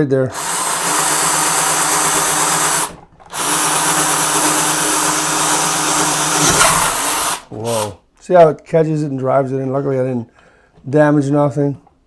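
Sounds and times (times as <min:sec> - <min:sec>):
electric drill boring a hole: 0:00.3 - 0:08.0.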